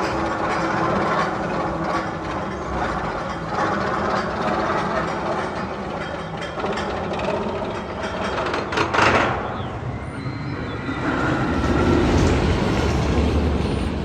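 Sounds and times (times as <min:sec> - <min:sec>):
roller coaster rattling on track: 0:00.0 - 0:14.0.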